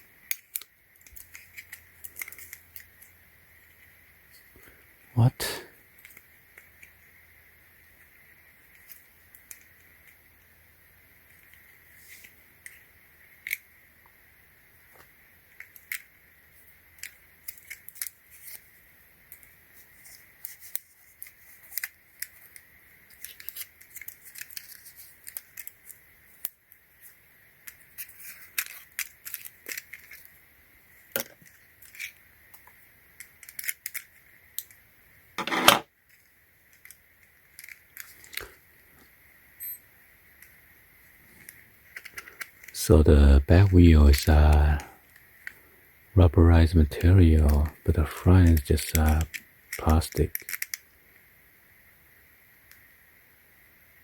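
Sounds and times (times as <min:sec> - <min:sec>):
toy packaging being handled: 0:00.4 - 0:03.8, 0:19.9 - 0:26.5, 0:27.7 - 0:30.3, 0:31.1 - 0:32.6, 0:33.2 - 0:34.7, 0:35.4 - 0:38.5, 0:41.3 - 0:42.8, 0:47.4 - 0:50.8.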